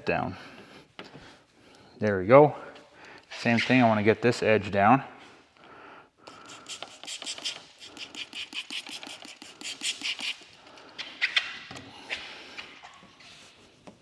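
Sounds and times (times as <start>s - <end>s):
squeegee scraping on film: 6.4s - 13.6s.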